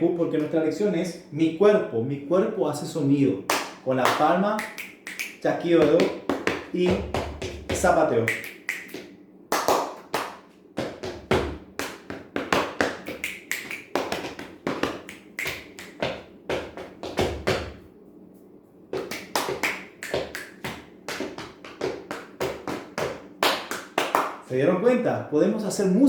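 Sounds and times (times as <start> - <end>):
hand claps: 3.5 - 17.8, 19.0 - 24.5
finger snaps: 4.6 - 5.4, 8.3 - 9.1, 13.1 - 14.0, 15.0 - 16.0
foot stomps: 5.8 - 8.0, 10.8 - 17.8, 18.9 - 23.7.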